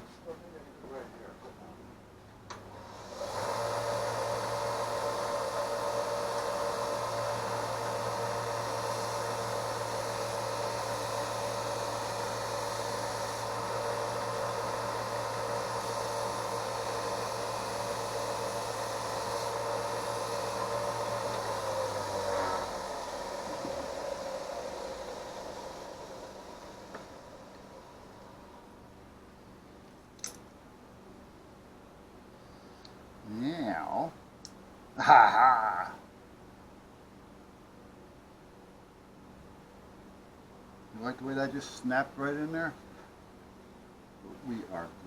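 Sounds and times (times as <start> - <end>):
small electric motor whirring: 2.7 - 28.7.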